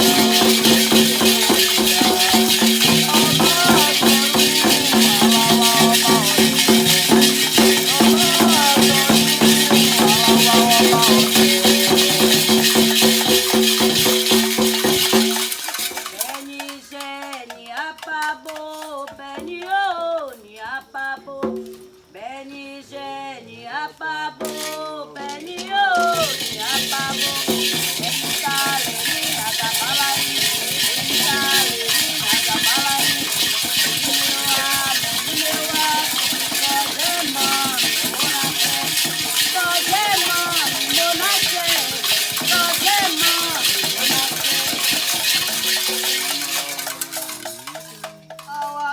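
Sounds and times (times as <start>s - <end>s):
person chanting solo: 0.0s - 12.6s
people singing: 0.0s - 21.5s, 22.2s - 48.9s
shaken rattles and percussion: 0.0s - 22.1s, 24.4s - 48.9s.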